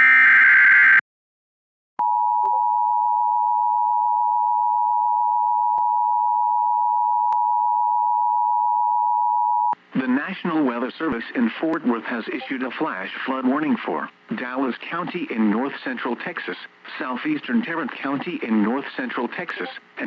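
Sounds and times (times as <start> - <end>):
digital data tones: 19.5 - 19.8
two-tone attention signal: 19.5 - 19.8.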